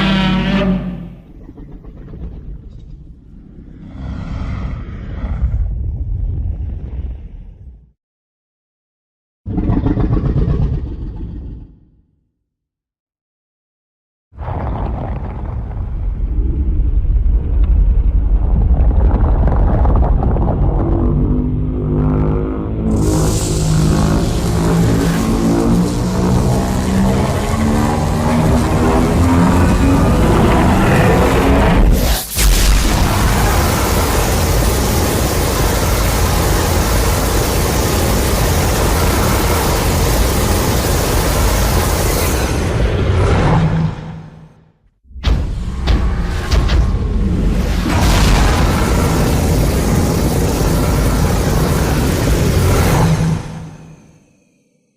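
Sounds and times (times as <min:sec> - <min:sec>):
steady pitched roar tone: 0:00.0 - 0:06.1, 0:20.6 - 0:44.6, 0:47.2 - 0:54.8
deep rumble: 0:00.0 - 0:08.0, 0:14.4 - 0:54.3
monster roaring growl: 0:22.9 - 0:32.0, 0:32.7 - 0:41.0.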